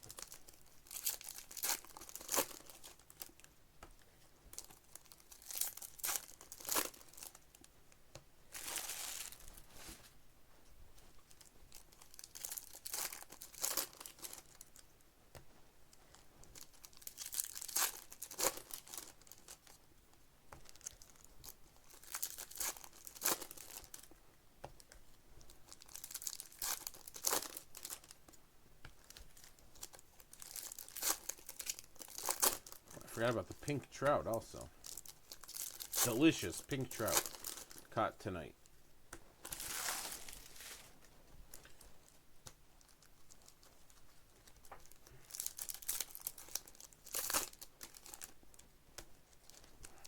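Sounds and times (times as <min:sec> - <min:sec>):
card pack wrappers tearing: 0:29.9 - 0:37.9, 0:39.4 - 0:40.9, 0:45.3 - 0:48.3.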